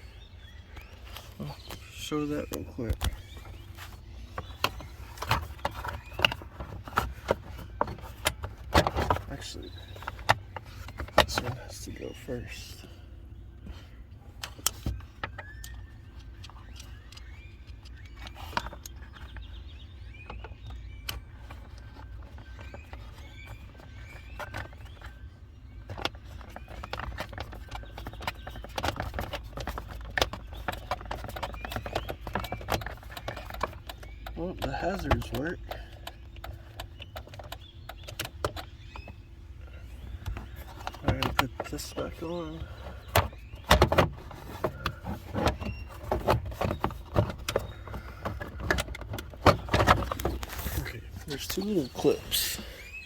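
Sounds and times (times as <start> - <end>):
low steady hum: 0.0 - 53.0
plastic trim clicking and knocking: 25.8 - 39.2, 40.2 - 50.8.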